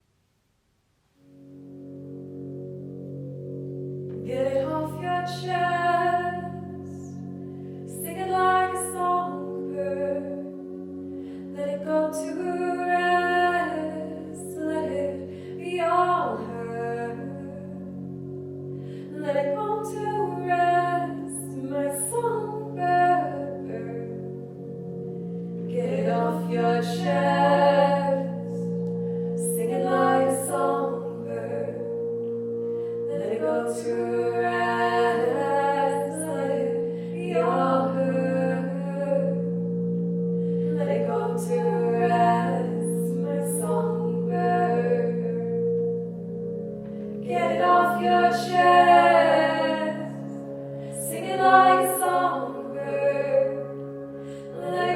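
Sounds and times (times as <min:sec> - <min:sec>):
looped woman's vocals: 0:04.2 - 0:07.2, 0:07.8 - 0:10.7, 0:11.4 - 0:17.9, 0:19.0 - 0:24.3, 0:25.7 - 0:32.0, 0:33.0 - 0:39.6, 0:40.6 - 0:45.8, 0:47.2 - 0:54.9.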